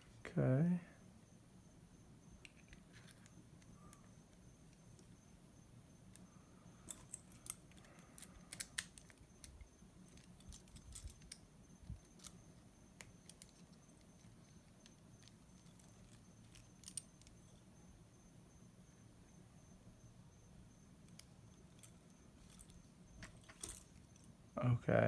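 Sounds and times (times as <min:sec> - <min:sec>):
metal lock parts clicking: 0:06.1 - 0:17.6, 0:21.1 - 0:24.3.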